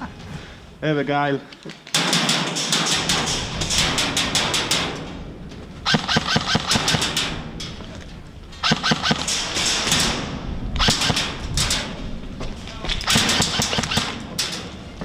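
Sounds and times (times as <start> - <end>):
airsoft rifle firing bursts: 5.8 - 7.1, 8.6 - 9.3.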